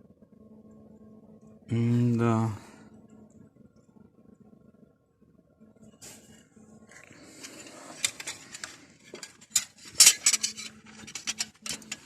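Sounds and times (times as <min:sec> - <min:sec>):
metal tools clinking: 0:07.9 - 0:12.0.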